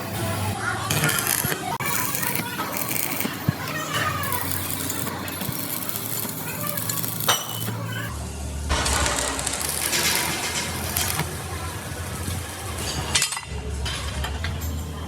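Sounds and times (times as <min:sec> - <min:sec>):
low machine hum: 0:08.1 - 0:12.7.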